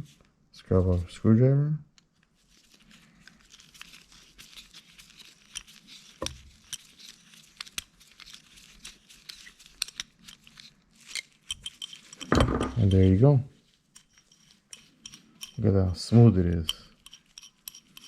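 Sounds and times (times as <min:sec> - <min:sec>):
screwdriver scraping on metal: 0:09.2 - 0:18.0
metal knock: 0:12.2 - 0:12.8.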